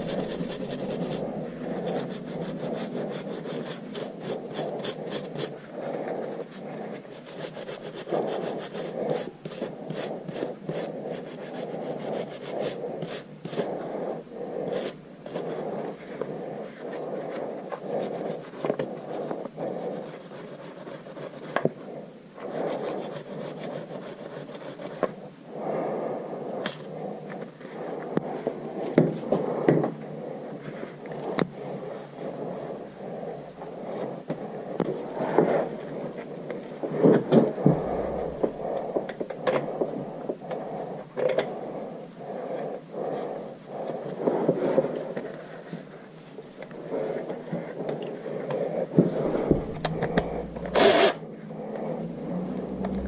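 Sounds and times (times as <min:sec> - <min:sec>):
hand tools scraping and rubbing: 0:00.0 - 0:13.9.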